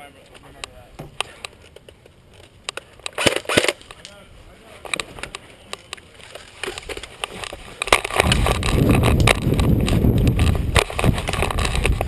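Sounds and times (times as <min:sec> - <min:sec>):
sharp clicks: 0:00.6 - 0:04.2.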